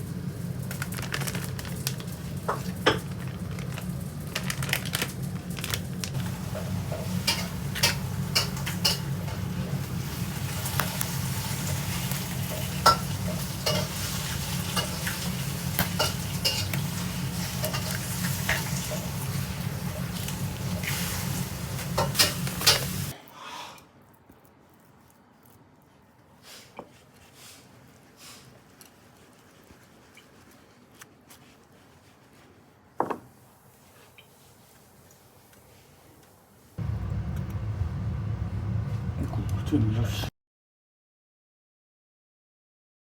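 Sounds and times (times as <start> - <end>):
utensil stirring food: 5.5 - 23.2, 24.0 - 35.9
steady low hum: 36.8 - 40.3.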